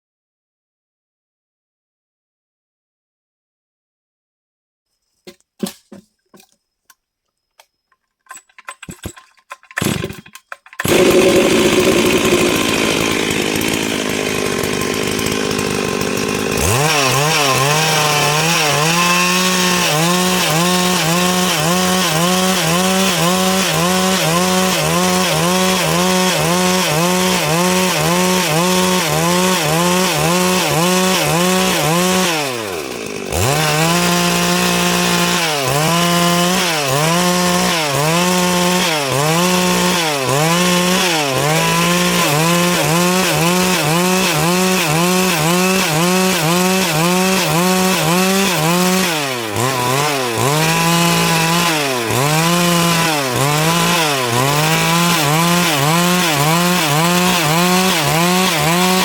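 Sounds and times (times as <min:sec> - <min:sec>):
chainsaw cutting wood: 0:05.2 - 0:07.0, 0:07.6 - 0:59.0.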